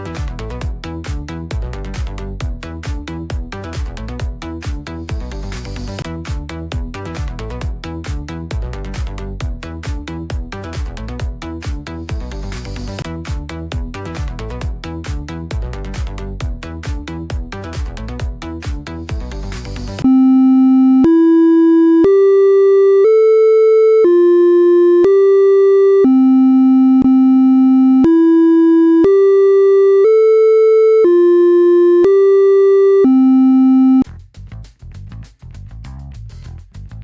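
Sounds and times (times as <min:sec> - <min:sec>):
buzzy synthesizer beep melody: 0:20.0 - 0:34.0.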